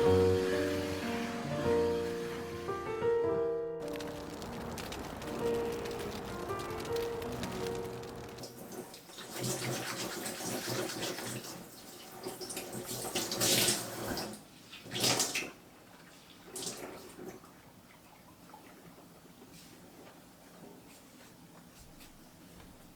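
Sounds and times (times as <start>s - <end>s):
background music: 0.0s - 8.9s
tap water running into sink: 8.4s - 15.6s.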